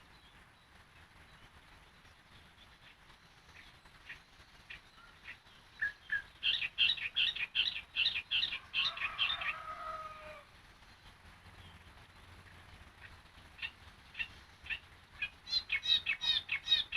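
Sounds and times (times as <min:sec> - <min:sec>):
bird singing bright chirps: 0:00.0 - 0:16.9.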